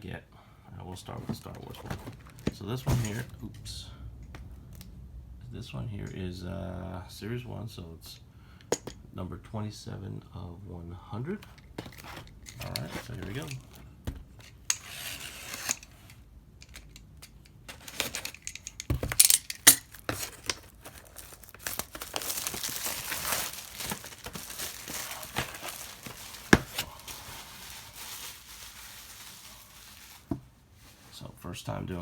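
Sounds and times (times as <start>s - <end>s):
packaging tearing and crinkling: 17.7s - 30.4s.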